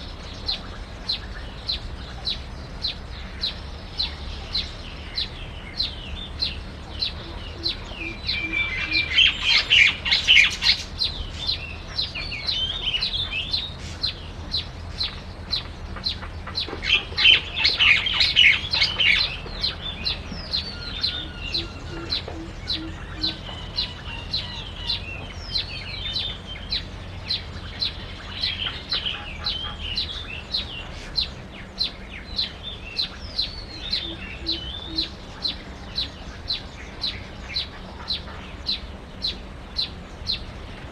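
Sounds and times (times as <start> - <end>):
bird chattering song: 0.0 - 40.9
small birds chirping: 0.0 - 40.9.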